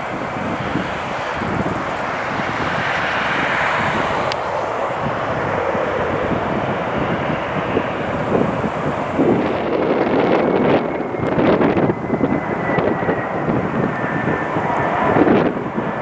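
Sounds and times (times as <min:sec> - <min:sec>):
jet engines roaring: 0:00.0 - 0:16.0
wind buffeting microphone: 0:00.0 - 0:16.0.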